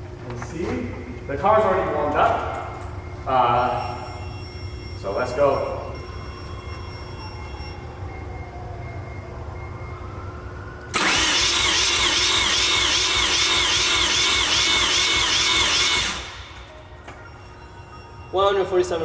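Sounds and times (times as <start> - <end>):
engine starter cranking whine: 10.8 - 17.7.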